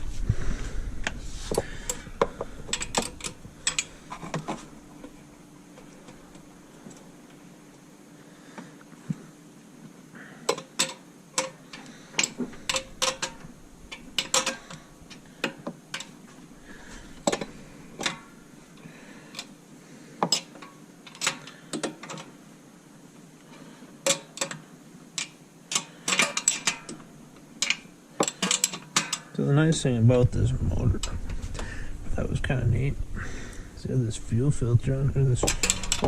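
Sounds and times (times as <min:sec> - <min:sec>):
faint steady hum: 0:00.0 - 0:36.0
hand tools clinking on metal: 0:02.7 - 0:03.9, 0:10.5 - 0:14.8, 0:25.2 - 0:27.0, 0:35.4 - 0:36.0.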